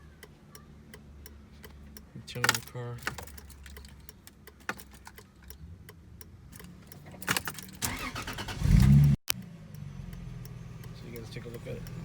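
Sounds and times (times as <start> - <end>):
ignition key clicks: 2.0 - 9.5
car keys jangling: 2.3 - 5.6, 6.5 - 8.6.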